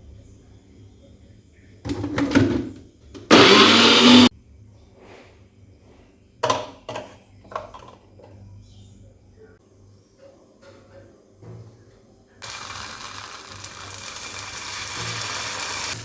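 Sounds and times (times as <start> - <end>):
small electric motor spinning up: 3.3 - 4.3.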